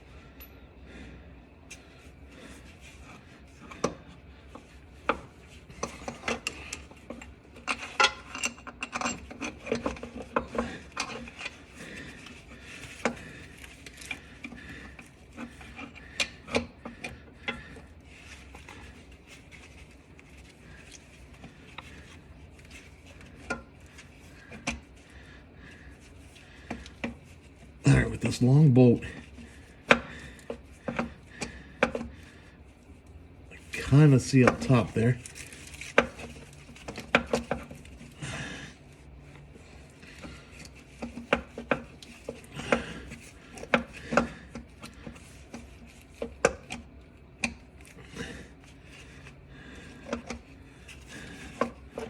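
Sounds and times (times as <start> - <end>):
tools rubbing and scraping: 1.7 - 52.0.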